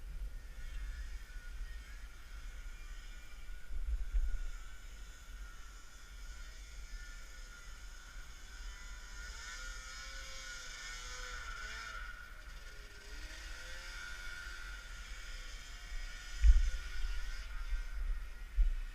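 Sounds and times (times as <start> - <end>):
snowmobile engines revving: 8.0 - 18.5.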